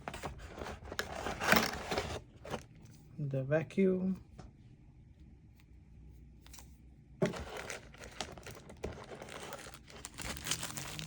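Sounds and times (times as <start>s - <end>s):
packaging crinkling and rustling: 0.0s - 2.7s, 7.2s - 11.0s.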